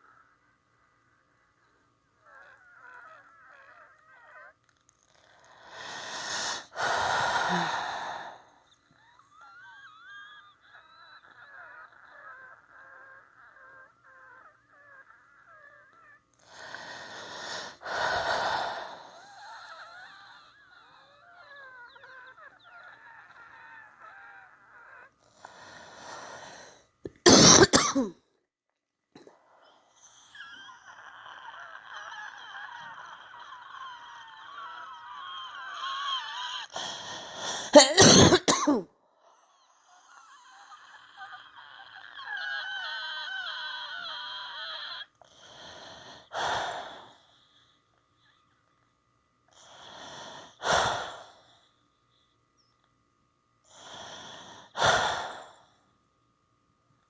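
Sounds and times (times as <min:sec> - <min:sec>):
wheezing breathing: 0:00.0 - 0:28.1, 0:29.2 - 0:48.8, 0:49.5 - 0:52.7, 0:53.7 - 0:55.9
noisy breath: 0:05.1 - 0:11.6, 0:16.4 - 0:22.2, 0:45.2 - 0:48.6, 0:49.5 - 0:52.7, 0:53.7 - 0:56.0
loud cough: 0:27.1 - 0:28.1, 0:37.6 - 0:38.9.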